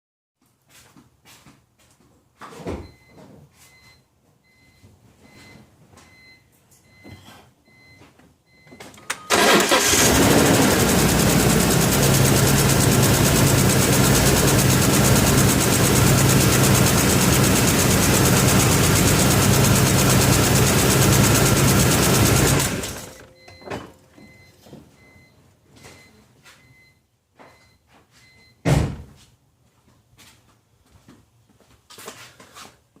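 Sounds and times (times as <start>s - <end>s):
engine starting: 9.1s - 11.2s
car engine running with misfire: 9.2s - 23.3s.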